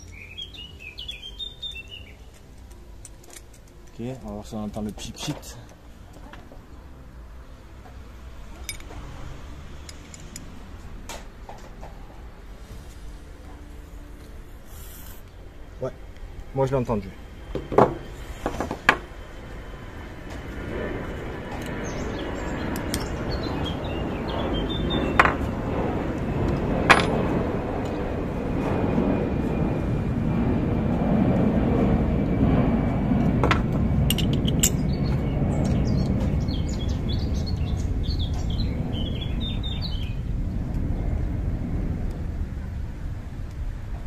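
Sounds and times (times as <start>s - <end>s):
birds chirping: 0.0s - 2.9s, 21.7s - 25.7s, 34.6s - 40.6s
low rumble: 12.0s - 44.0s
puff of gas: 14.7s - 15.2s.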